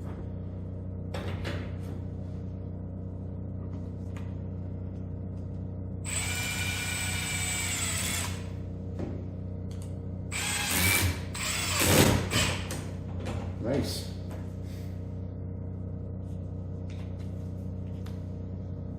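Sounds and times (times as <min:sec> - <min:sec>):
power drill whine: 0:06.0 - 0:08.5, 0:10.3 - 0:12.7.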